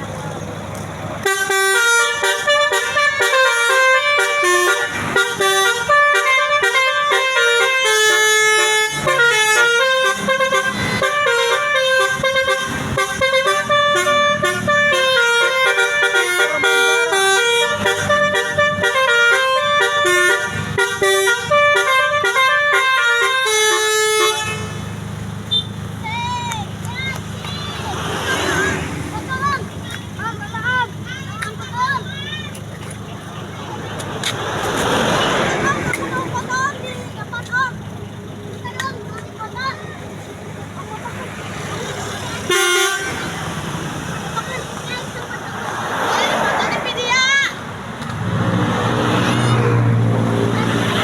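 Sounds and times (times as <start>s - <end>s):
musical bus air horn: 1.2s - 25.8s, 42.3s - 43.6s.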